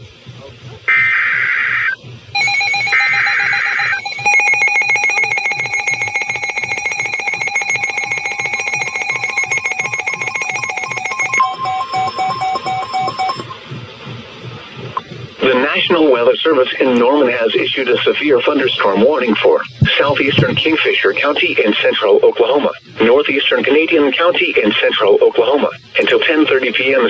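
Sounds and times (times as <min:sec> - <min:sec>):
screeching data bursts: 0:00.9 - 0:13.6
pulsing electronic alert tone: 0:02.4 - 0:13.7.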